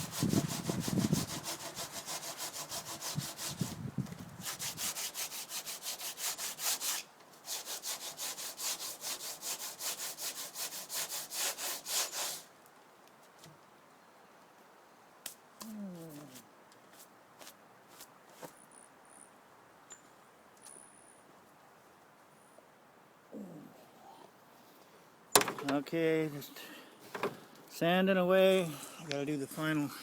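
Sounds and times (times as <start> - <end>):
sandpaper scraping fiberglass: 0.0 - 3.8, 4.4 - 12.5.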